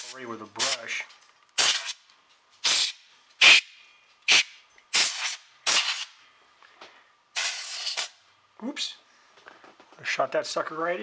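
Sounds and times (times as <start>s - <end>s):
compressed air hissing blasts: 1.6s - 2.0s, 2.6s - 3.7s, 4.3s - 6.2s, 7.3s - 8.2s.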